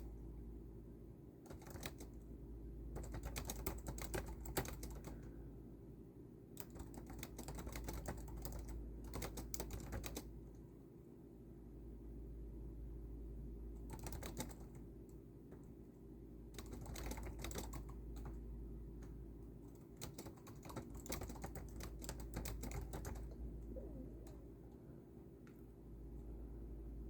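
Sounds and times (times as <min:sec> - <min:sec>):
low steady hum: 0:00.0 - 0:27.0
typing on a keyboard: 0:01.4 - 0:02.3, 0:02.9 - 0:05.3, 0:06.6 - 0:10.3, 0:13.8 - 0:14.9, 0:16.5 - 0:18.4, 0:19.0 - 0:23.4.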